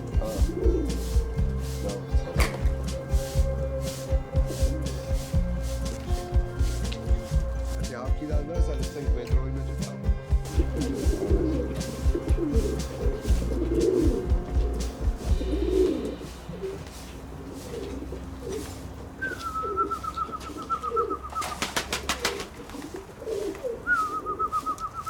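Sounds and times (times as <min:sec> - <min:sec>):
background music: 0:00.0 - 0:25.0
pigeons cooing: 0:00.0 - 0:25.0
wavering high whistle: 0:19.2 - 0:21.5, 0:23.8 - 0:25.0.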